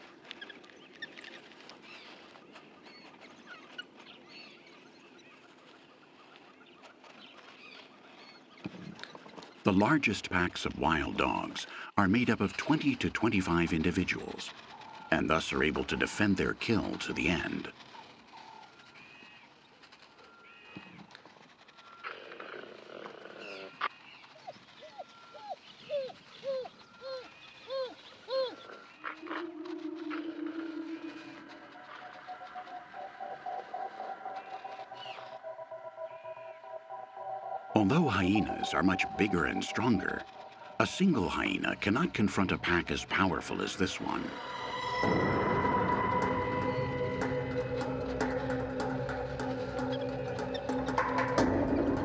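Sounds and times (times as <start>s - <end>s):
low background noise: 0.0s - 52.0s
wild dogs twittering chirps: 10.9s - 52.0s
steady low tone: 29.2s - 52.0s.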